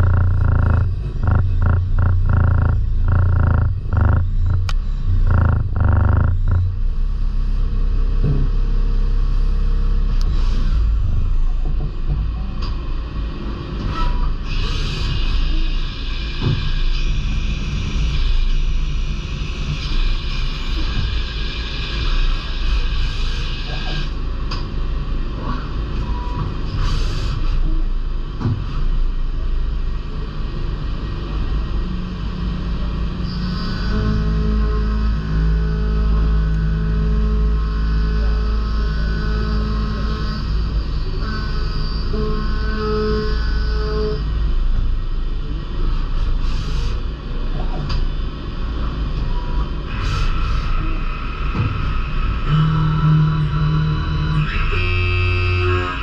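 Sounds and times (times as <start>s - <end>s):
lathe running rumble: 0.0s - 7.0s.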